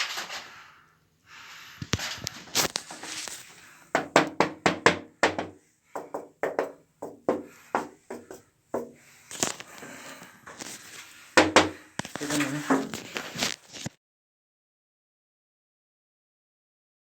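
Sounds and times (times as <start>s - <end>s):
knocks on wall tiles: 3.9s - 9.0s, 11.4s - 11.8s.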